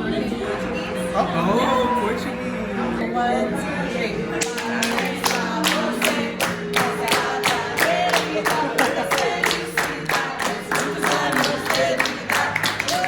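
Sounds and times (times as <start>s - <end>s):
group singing a celebration song: 0.0s - 13.0s
people clapping a steady beat: 4.4s - 13.0s.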